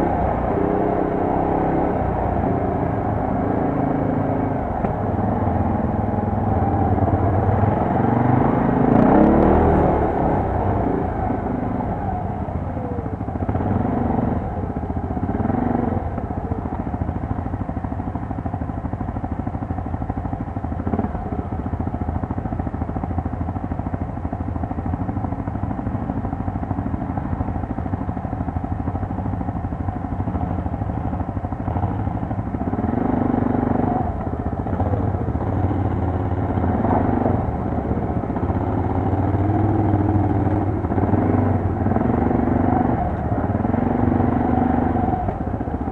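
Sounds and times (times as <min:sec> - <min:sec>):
quad bike engine revving: 0:00.0 - 0:17.8, 0:19.9 - 0:22.9, 0:29.8 - 0:45.9.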